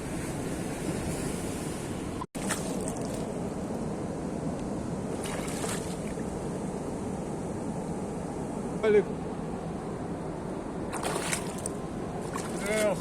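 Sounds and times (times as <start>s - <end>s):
sea surf washing on shore: 0.0s - 13.0s.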